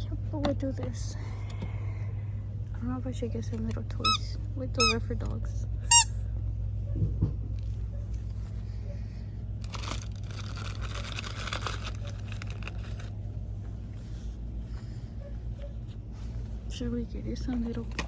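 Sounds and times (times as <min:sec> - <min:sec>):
low hum: 0:00.0 - 0:18.0
packaging crinkling: 0:09.6 - 0:13.2, 0:17.6 - 0:18.0.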